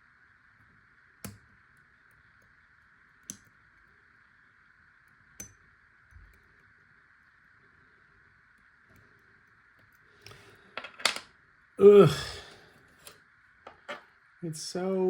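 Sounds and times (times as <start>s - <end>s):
faint steady hiss: 11.8s - 15.0s.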